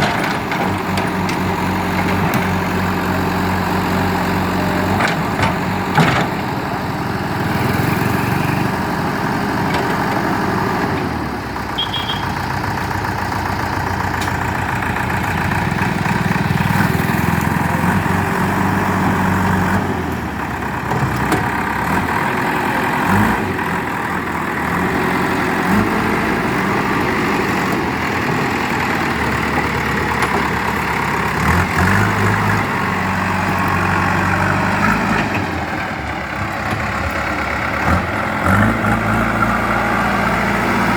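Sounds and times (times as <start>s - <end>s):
diesel engine revving: 0.0s - 40.9s.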